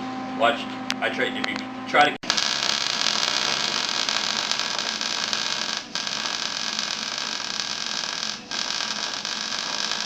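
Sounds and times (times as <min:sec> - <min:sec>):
welding arc hissing: 0:02.2 - 0:10.0.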